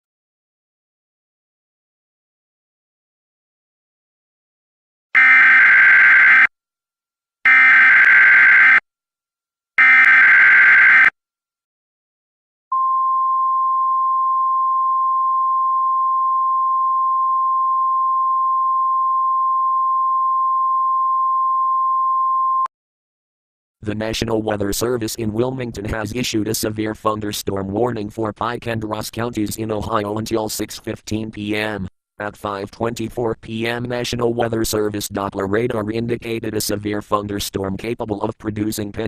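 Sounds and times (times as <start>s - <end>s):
steady alarm tone: 5.2s - 6.5s, 7.5s - 8.8s, 9.8s - 11.1s
harsh data bursts: 7.5s - 8.8s.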